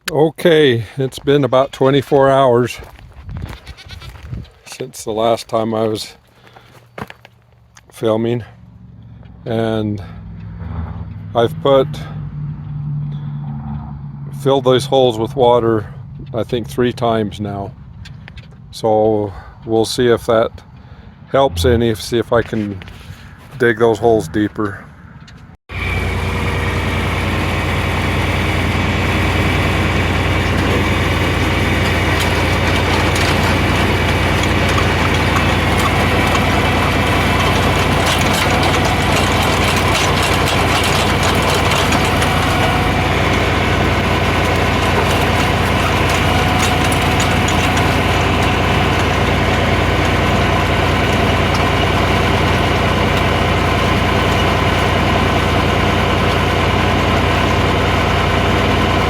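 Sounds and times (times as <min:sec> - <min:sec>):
tractor engine under load: 0:00.0 - 0:03.0, 0:03.6 - 0:19.2, 0:21.3 - 0:59.0
auger rattling and scraping: 0:01.1 - 0:08.1, 0:26.0 - 0:59.0.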